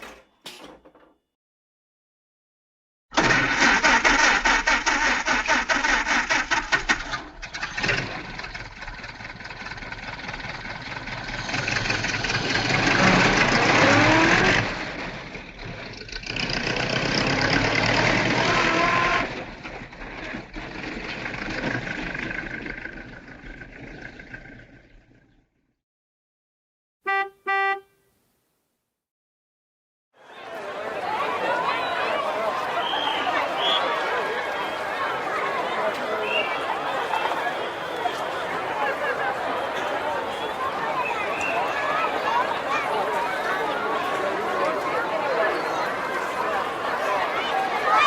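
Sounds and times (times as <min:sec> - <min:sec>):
car engine revving: 0:07.8 - 0:23.2.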